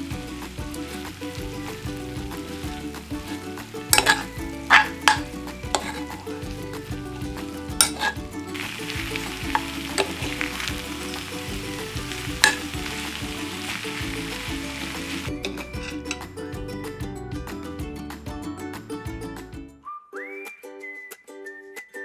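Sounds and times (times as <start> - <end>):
food sizzling in a hot pan: 0.0 - 15.7
utensil scraping and clinking pan: 1.1 - 16.2.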